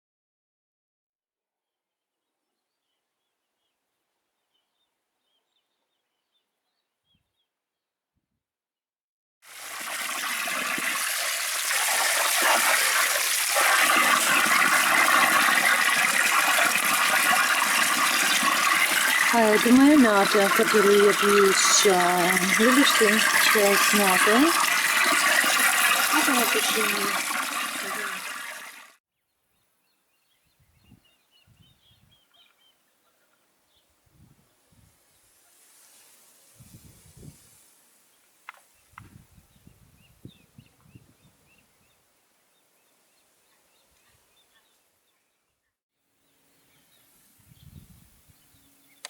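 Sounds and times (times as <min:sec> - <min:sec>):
water rushing: 0:09.5 - 0:29.0.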